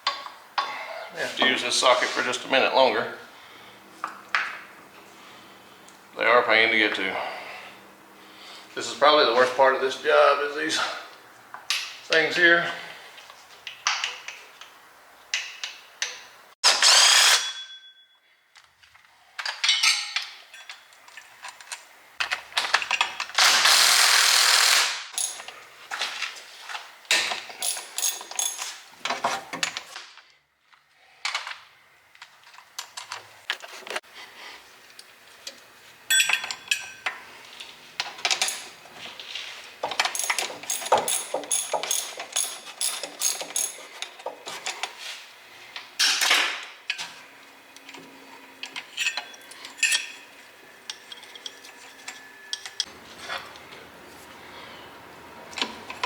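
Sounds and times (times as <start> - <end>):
metal tools clinking: 19.5 - 21.8, 25.2 - 26.1, 27.1 - 29.9, 36.1 - 37.2, 38.0 - 45.1, 48.6 - 53.7
metallic clanks: 39.8 - 44.4.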